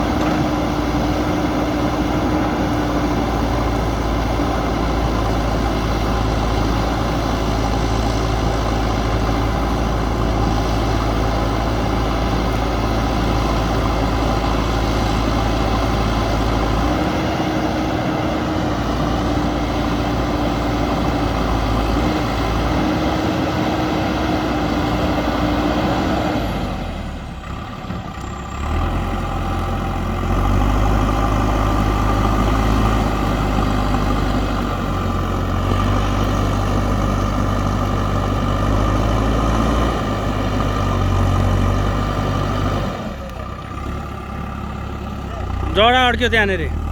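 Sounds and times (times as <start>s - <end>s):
diesel engine under load: 0.0s - 46.9s.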